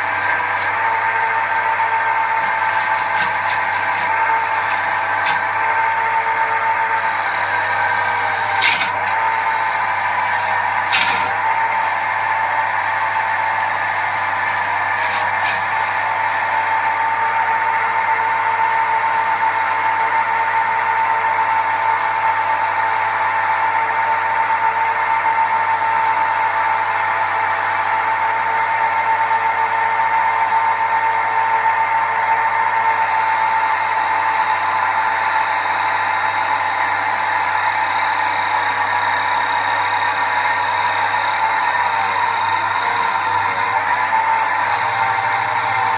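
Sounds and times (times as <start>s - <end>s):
gouge cutting into wood: 0.0s - 1.0s, 2.0s - 6.0s, 6.8s - 13.0s, 13.7s - 16.5s, 32.9s - 45.9s
wood lathe whining: 0.0s - 45.9s.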